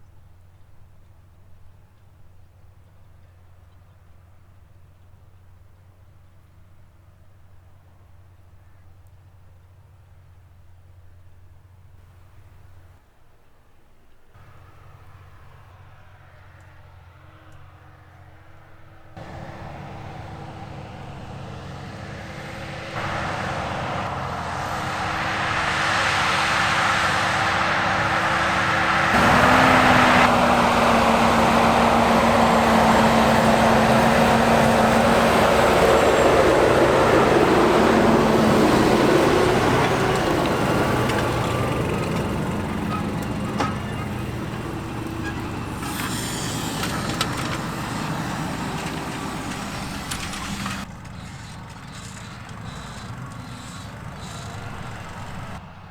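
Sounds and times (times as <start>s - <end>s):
tractor engine under load: 19.2s - 55.9s.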